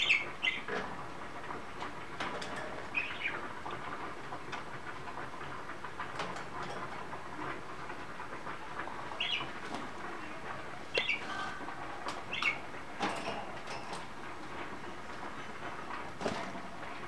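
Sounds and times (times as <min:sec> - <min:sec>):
budgerigars chirping: 0:00.0 - 0:00.7, 0:02.9 - 0:03.4, 0:09.2 - 0:09.5, 0:11.0 - 0:11.3, 0:12.3 - 0:12.6.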